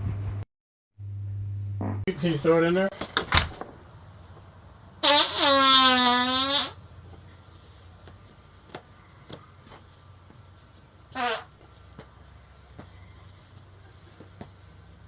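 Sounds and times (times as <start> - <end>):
squeaky fart: 5.0 - 6.8, 11.1 - 11.5.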